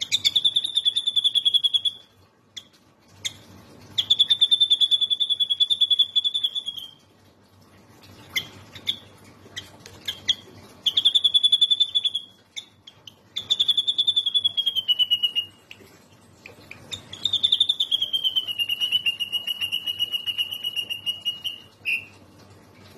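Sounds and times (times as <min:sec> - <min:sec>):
songbird trilling: 0:10.9 - 0:12.8, 0:13.4 - 0:15.5, 0:16.9 - 0:22.1.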